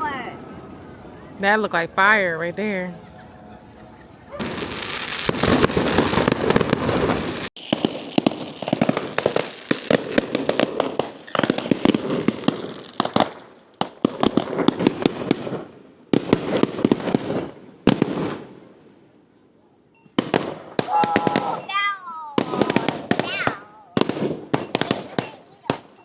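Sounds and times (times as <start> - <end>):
fireworks crackling pops: 4.3 - 19.0, 20.0 - 26.0.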